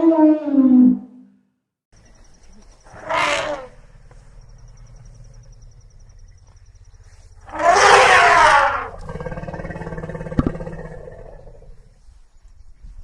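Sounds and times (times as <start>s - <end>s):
elephant roaring call: 2.9s - 3.8s, 7.4s - 11.8s.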